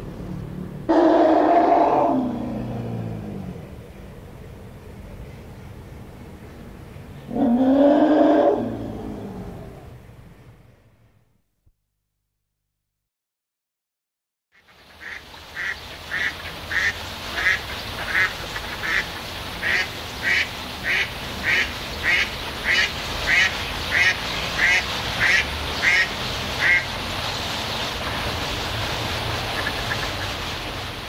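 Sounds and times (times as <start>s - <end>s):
pond background hiss: 14.6s - 31.0s
duck quacking: 15.0s - 26.9s.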